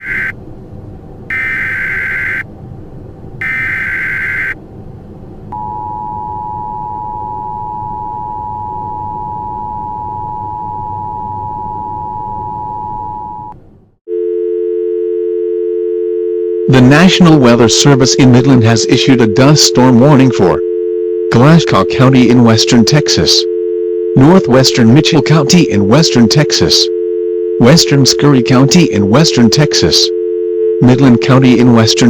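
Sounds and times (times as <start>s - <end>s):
screeching data signal bursts: 0.0s - 0.4s, 1.3s - 2.5s, 3.4s - 4.6s
low rumbling noise: 0.0s - 14.0s
steady attention beep: 1.3s - 2.4s, 3.4s - 4.6s
lower two-note tone: 5.5s - 13.5s.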